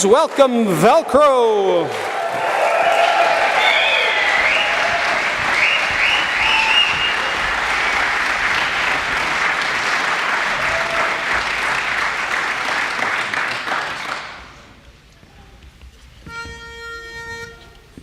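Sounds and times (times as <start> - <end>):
audience applauding: 0.0 - 14.7
high whoops: 1.5 - 7.5, 10.5 - 11.3.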